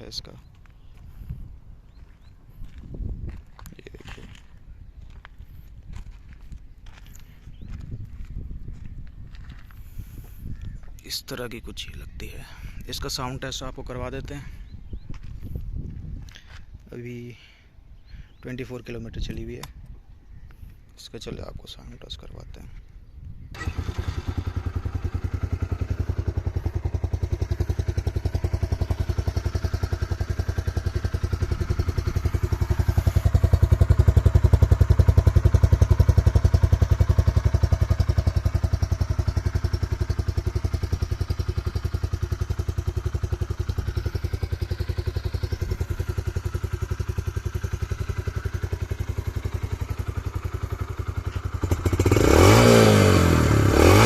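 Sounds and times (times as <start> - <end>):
motorcycle engine idling and revving: 23.5 - 54.0.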